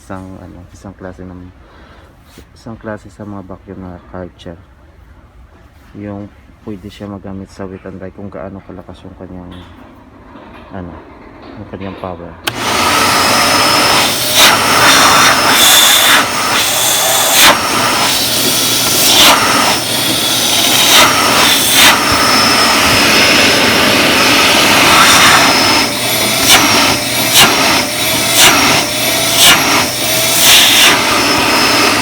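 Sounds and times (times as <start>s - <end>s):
sucking surges: 12.4s - 32.0s
vacuum cleaner running: 12.4s - 32.0s.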